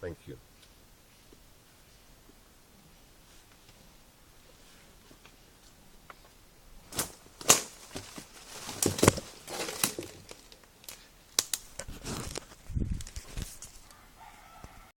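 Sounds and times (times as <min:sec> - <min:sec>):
rustling and crackling handling: 0:04.5 - 0:14.0.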